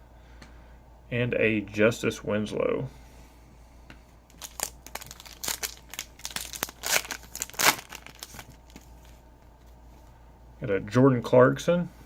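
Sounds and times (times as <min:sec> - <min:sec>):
foil wrapper crinkling and tearing: 0:04.3 - 0:09.2.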